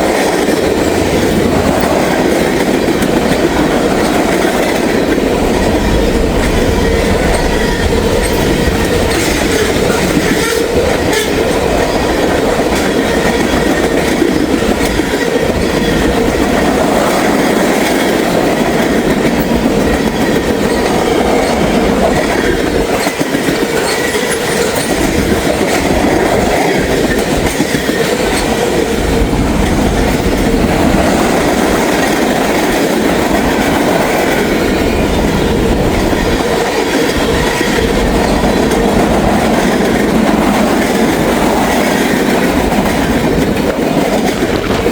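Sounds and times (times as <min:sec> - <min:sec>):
freight train rushing past: 0:00.0 - 0:44.9
steel wheels clacking on rails: 0:00.0 - 0:44.9.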